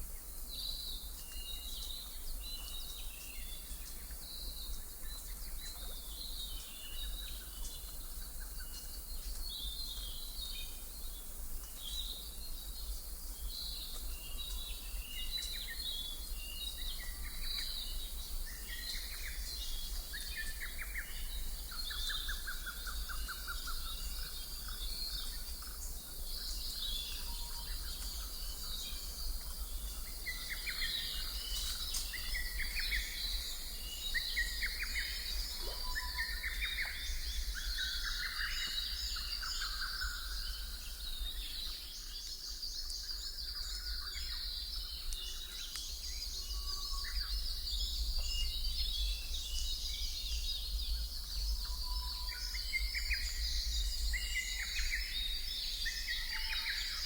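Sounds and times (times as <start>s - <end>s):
small birds chirping: 0.6s - 57.0s.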